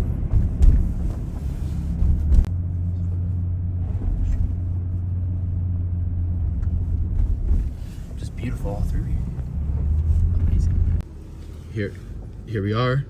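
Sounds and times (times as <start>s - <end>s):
car cabin rattles: 0.0s - 2.5s
car engine and tyre rumble: 0.0s - 13.0s.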